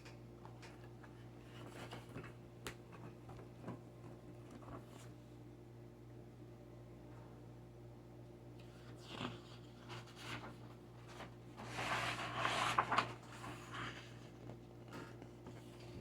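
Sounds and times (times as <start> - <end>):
paper rustling: 1.5 - 5.1, 8.8 - 16.0.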